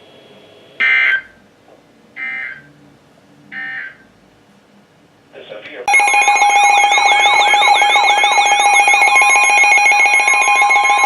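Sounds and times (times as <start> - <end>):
digital data tone bursts: 5.9 - 11.0.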